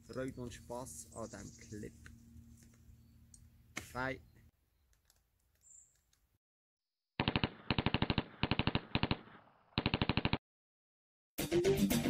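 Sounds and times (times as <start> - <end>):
machine-gun fire bursts: 7.2 - 10.4.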